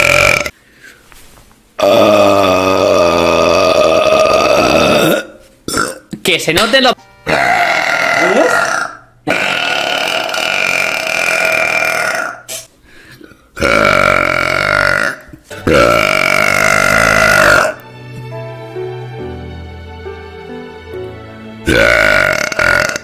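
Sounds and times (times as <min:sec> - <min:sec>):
long loud burps: 0:00.0 - 0:00.6, 0:01.8 - 0:06.0, 0:07.3 - 0:12.7, 0:13.6 - 0:17.8, 0:21.7 - 0:23.0
soft background music: 0:06.6 - 0:08.5, 0:15.5 - 0:23.0.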